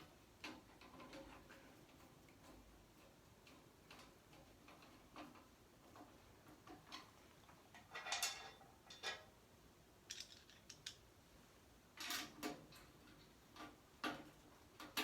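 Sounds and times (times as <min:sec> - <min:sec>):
metal hardware clicks and scrapes: 0:07.7 - 0:09.3, 0:10.1 - 0:11.0.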